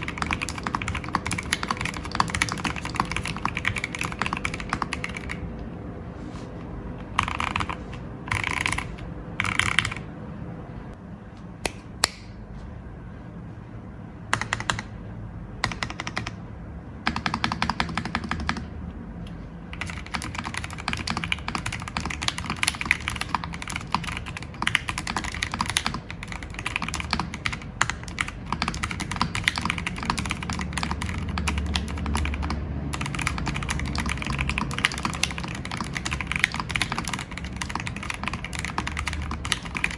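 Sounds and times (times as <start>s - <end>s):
mechanical keyboard typing: 0.0s - 5.5s, 7.1s - 10.1s, 14.3s - 15.0s, 15.6s - 16.4s, 17.0s - 18.7s, 19.7s - 39.9s.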